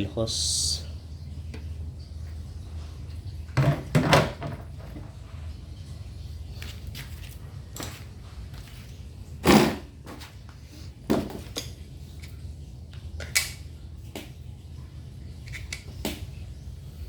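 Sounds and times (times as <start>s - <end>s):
steady low hum: 0.0s - 17.0s
tools and parts knocking: 3.6s - 5.0s.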